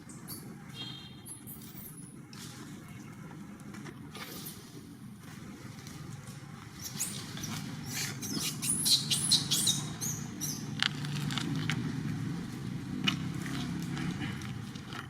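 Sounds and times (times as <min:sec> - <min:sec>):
baby monkey squealing: 0:06.8 - 0:10.7.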